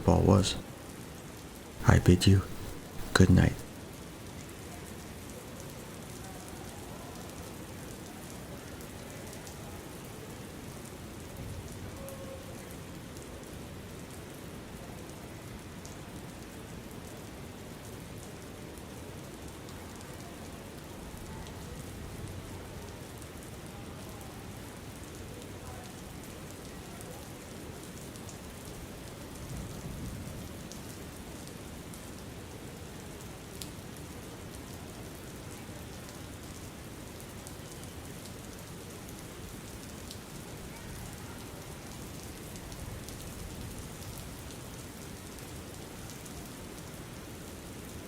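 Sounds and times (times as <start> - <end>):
steady rain hiss: 0.0 - 12.0, 21.8 - 48.0.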